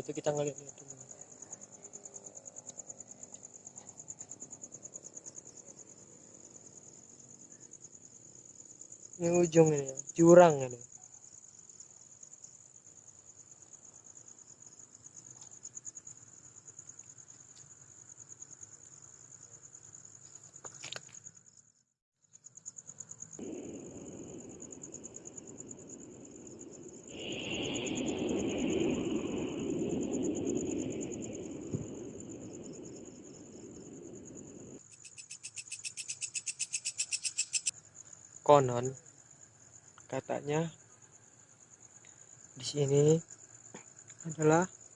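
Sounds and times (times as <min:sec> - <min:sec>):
crickets trilling: 0:00.0 - 0:44.9
insect call pulsing rapidly: 0:00.0 - 0:44.9.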